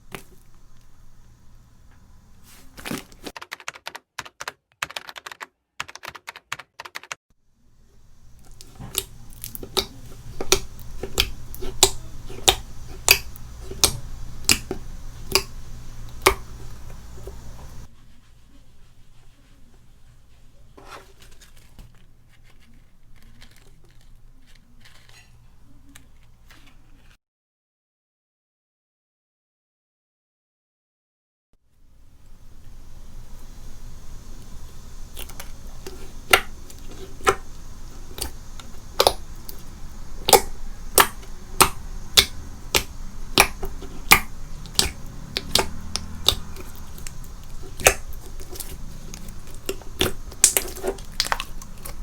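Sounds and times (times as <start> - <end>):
slime crackling and popping: 8.4 - 17.9, 33.9 - 52.0.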